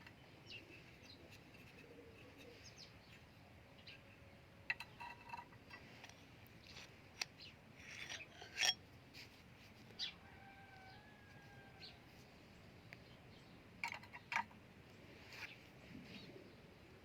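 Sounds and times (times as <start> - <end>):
small objects scraping: 4.8 - 9.4.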